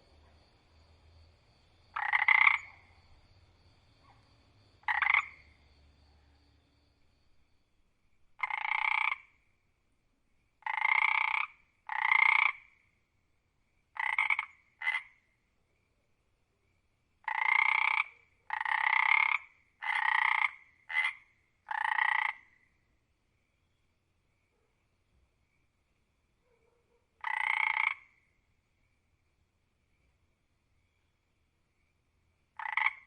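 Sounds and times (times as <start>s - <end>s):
frog croaking: 1.8s - 6.6s, 8.4s - 9.5s, 10.6s - 13.0s, 13.9s - 15.4s, 17.2s - 22.8s, 27.2s - 28.4s, 32.5s - 33.0s.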